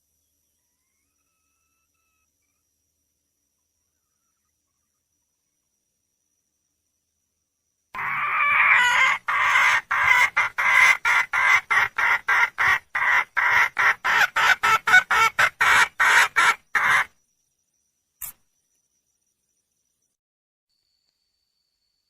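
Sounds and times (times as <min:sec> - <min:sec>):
hen clucking rapidly: 0:08.0 - 0:17.1
junglefowl hen calling: 0:08.0 - 0:17.1.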